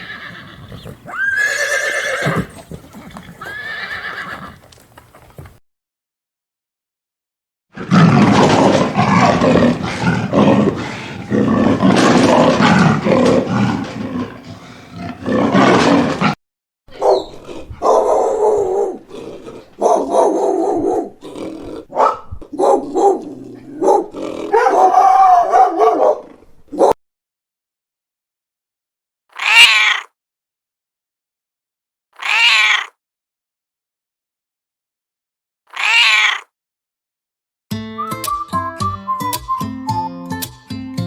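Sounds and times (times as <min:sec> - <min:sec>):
rough animal call: 0:07.8 - 0:18.1, 0:29.3 - 0:30.1, 0:32.2 - 0:33.0, 0:35.7 - 0:36.5
short pitched animal calls: 0:29.3 - 0:30.1, 0:32.2 - 0:32.9, 0:35.7 - 0:36.5.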